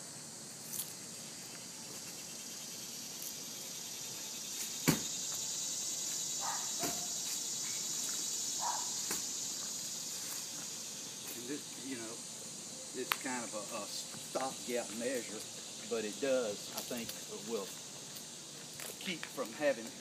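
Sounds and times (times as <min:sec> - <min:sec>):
insect chorus: 0:00.0 - 0:20.0
sharp knocks: 0:04.8 - 0:05.1.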